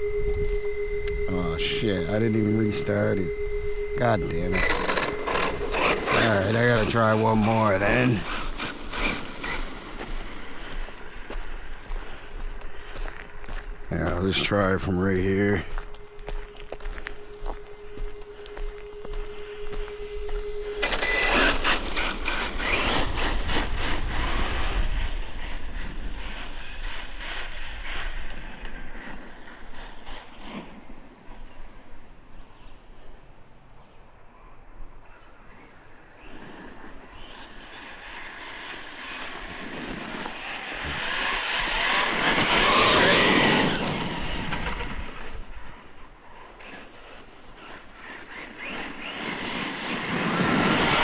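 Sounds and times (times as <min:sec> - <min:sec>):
electric motor whining: 0:00.0 - 0:12.0, 0:13.5 - 0:27.4, 0:37.8 - 0:45.6, 0:48.4 - 0:51.0
steady tone: 0:00.0 - 0:25.6.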